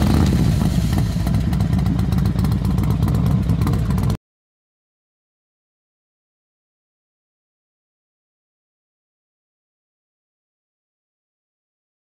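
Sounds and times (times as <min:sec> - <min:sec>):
motorcycle engine running: 0:00.0 - 0:04.2.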